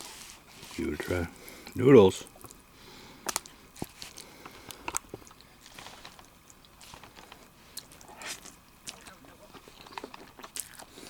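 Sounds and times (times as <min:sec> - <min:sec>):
person chewing noodles: 0:03.3 - 0:11.0.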